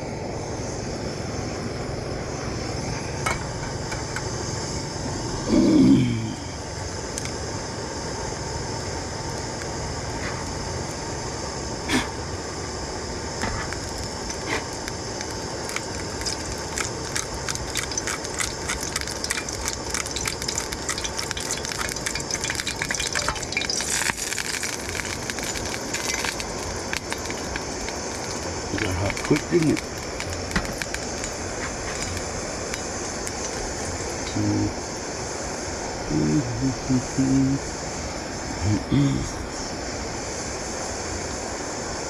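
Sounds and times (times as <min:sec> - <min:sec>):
steady hiss: 0:00.0 - 0:42.0
oil crackling and spitting in pan: 0:13.4 - 0:34.4.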